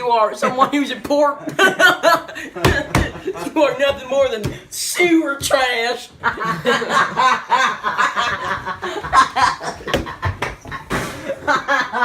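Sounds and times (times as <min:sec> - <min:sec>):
people laughing and snickering: 0:00.4 - 0:03.9, 0:06.2 - 0:12.0.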